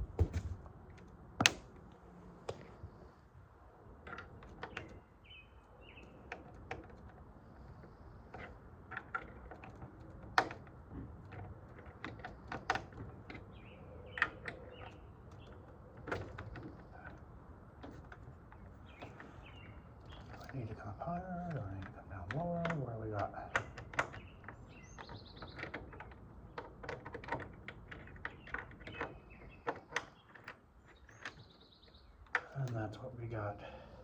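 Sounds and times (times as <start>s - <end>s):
bird chirping: 4.7s - 6.3s, 18.5s - 21.8s, 23.4s - 26.6s, 28.4s - 32.9s
door lock parts clicking: 21.4s - 31.5s.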